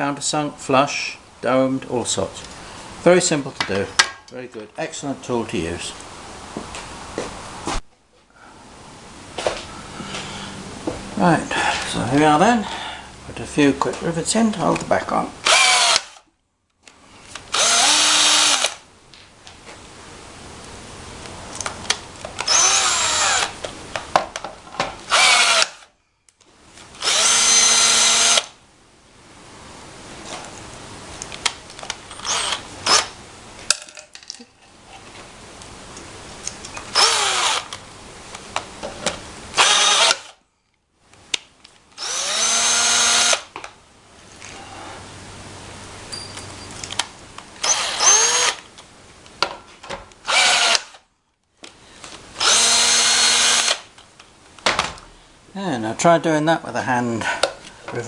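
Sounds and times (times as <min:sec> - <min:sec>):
cordless drill motor bursts: 0:15.4 - 0:16.2, 0:17.5 - 0:18.8, 0:22.4 - 0:23.6, 0:25.1 - 0:25.9, 0:27.0 - 0:28.6, 0:32.2 - 0:33.2, 0:36.9 - 0:37.8, 0:39.6 - 0:40.4, 0:42.0 - 0:43.5, 0:47.6 - 0:48.6, 0:50.2 - 0:51.0, 0:52.4 - 0:53.9
small clicks and handling noise: 0:40.6 - 0:42.0, 0:46.7 - 0:47.5.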